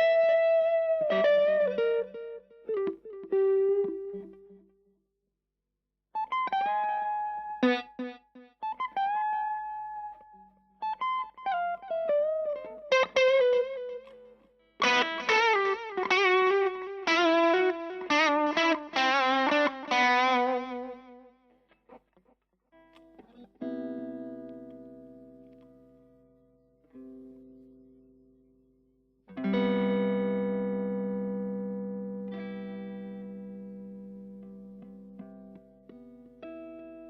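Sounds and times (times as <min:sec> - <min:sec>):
electric guitar lead lines: 0:00.0 - 0:04.6, 0:06.2 - 0:21.3, 0:22.8 - 0:26.0, 0:29.3 - 0:37.0
electric guitar chord ringing: 0:14.8 - 0:21.0, 0:29.3 - 0:35.6.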